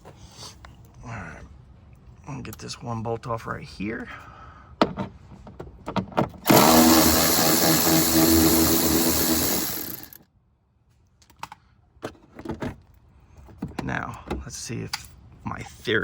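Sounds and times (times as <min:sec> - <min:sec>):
cordless driver spinning a bolt: 0:06.4 - 0:10.2.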